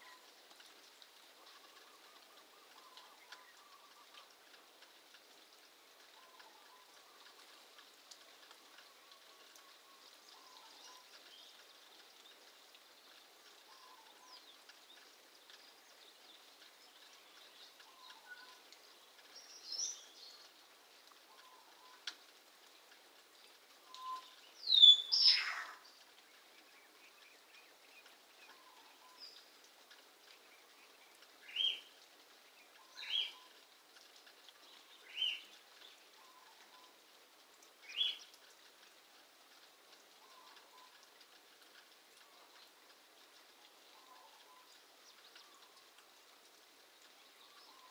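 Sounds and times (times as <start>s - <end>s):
bird short sharp calls: 24.0s - 25.8s.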